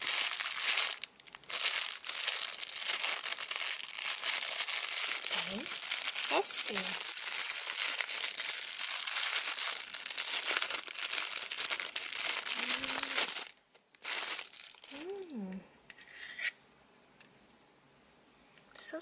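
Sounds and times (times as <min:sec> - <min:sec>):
plastic bag crinkling: 0:00.0 - 0:15.4
person exclaiming: 0:12.5 - 0:13.3, 0:14.9 - 0:15.6.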